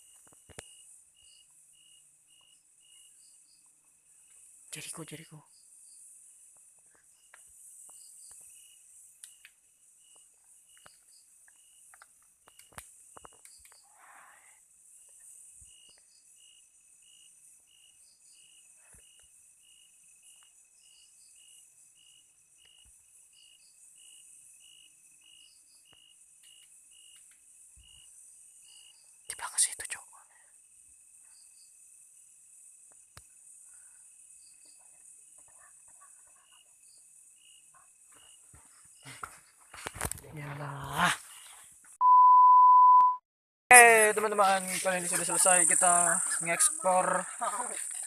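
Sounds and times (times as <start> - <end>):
cricket chirping: 0.0 - 43.0, 43.7 - 48.0
insect paired chirps: 0.0 - 43.0, 43.7 - 48.0
steady high hiss: 43.7 - 48.0.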